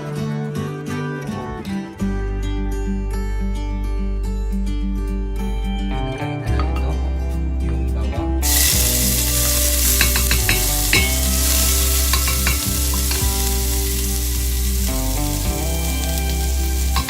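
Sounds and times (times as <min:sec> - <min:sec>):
garlic sizzling in hot oil: 0:08.4 - 0:17.0
utensil clicking against pan: 0:09.9 - 0:11.3, 0:12.1 - 0:13.3.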